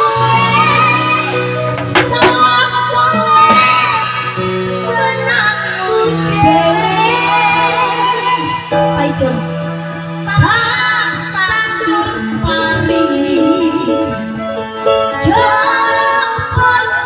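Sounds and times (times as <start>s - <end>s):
plucked strings: 1.7s - 9.9s
sharp percussive strikes: 1.8s - 2.7s, 3.5s - 9.8s
person singing wavering melody: 2.1s - 9.6s.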